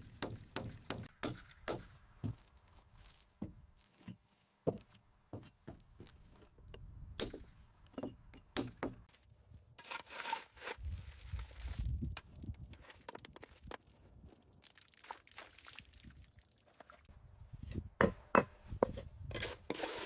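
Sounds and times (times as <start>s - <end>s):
wooden knocks and thuds: 18.0s - 19.0s.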